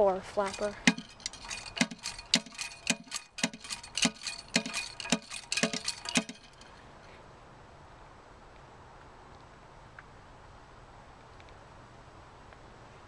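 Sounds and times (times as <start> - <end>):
low steady hiss: 0.0 - 13.0
clinks on porcelain toilet tank: 0.5 - 6.7.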